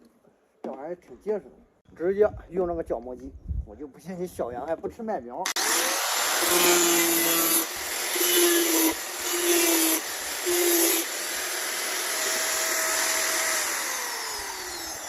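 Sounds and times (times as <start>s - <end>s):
angle grinder cutting plastic: 5.5s - 15.0s.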